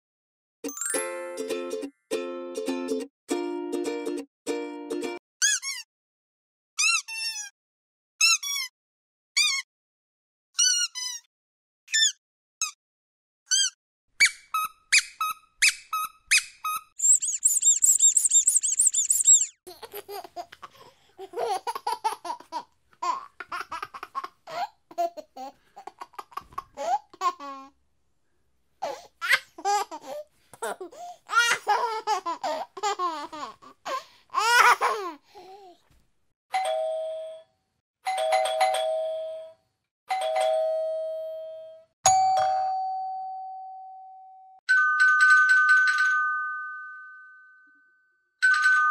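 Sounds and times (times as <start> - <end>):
squeaky toy squeaks: 5.4 - 5.9, 6.8 - 7.5, 8.2 - 8.7, 9.4 - 9.7, 10.6 - 11.3, 11.9 - 12.8, 13.5 - 22.4, 28.8 - 35.1
high jingling: 17.0 - 19.6
baby laughing: 17.0 - 27.7, 28.8 - 35.8
two-tone doorbell ding-dong: 40.1 - 47.6.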